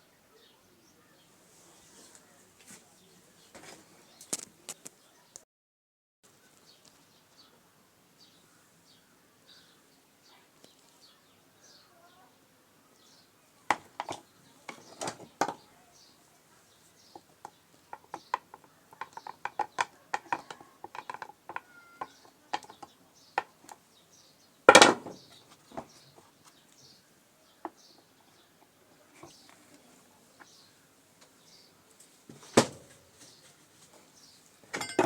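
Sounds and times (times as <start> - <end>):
birds chirping faintly: 0.0 - 5.4, 6.3 - 35.0
hand tools clicking and clanking: 17.9 - 23.5, 34.7 - 35.0.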